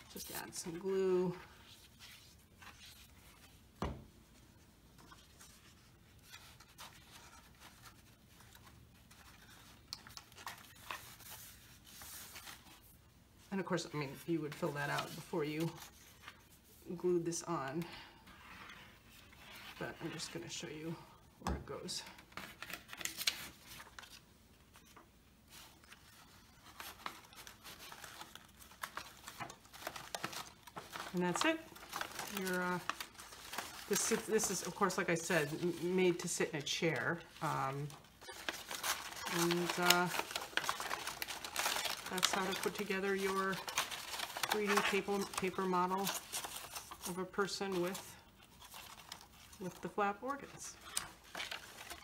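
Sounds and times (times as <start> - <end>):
paper rubbing and rustling: 0.0 - 13.0, 22.2 - 52.0.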